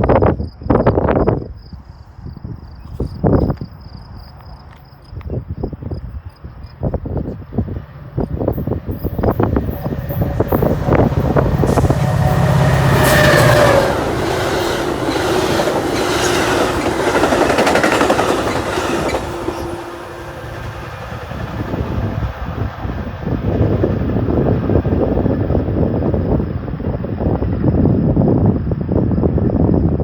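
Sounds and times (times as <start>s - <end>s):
train wheels clacking over rails: 8.2s - 25.1s.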